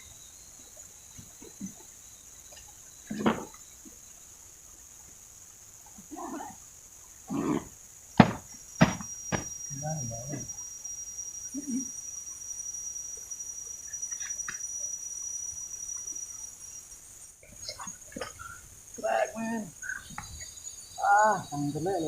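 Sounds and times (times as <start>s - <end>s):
insects droning: 0.0s - 22.0s
sharp knocks: 8.2s - 9.5s.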